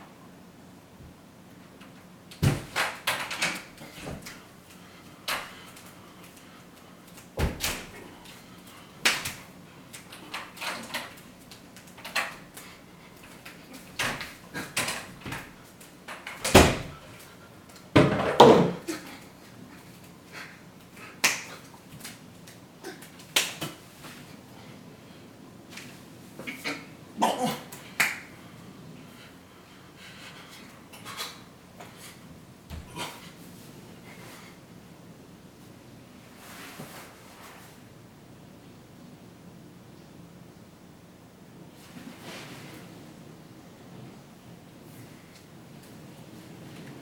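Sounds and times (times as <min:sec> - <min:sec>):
heavier thumps: 0:02.4 - 0:02.8.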